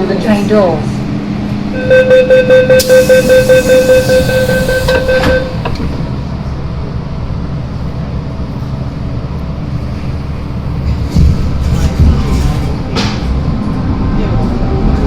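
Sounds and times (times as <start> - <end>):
train rumbling: 0.0 - 15.0
train door warning beeps: 1.8 - 6.0.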